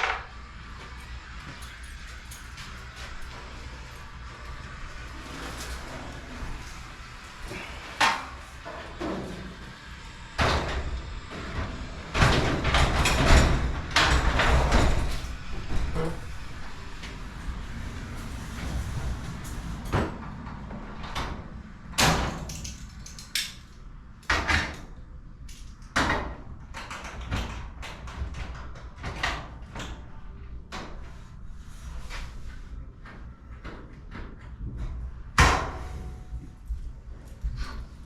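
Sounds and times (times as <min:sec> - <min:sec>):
garage door metallic clanking: 0:00.0 - 0:25.0, 0:33.8 - 0:36.5.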